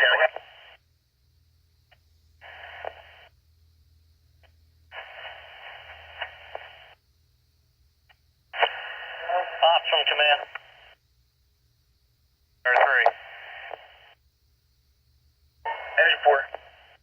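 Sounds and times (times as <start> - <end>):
radio static hiss bursts: 0.0 - 0.8, 2.4 - 3.4, 4.4 - 7.0, 8.5 - 11.0, 12.7 - 14.2, 15.7 - 17.0
radio squelch clicks: 1.9 - 3.3, 4.4 - 7.0, 8.1 - 11.0, 12.7 - 14.2, 15.7 - 17.0.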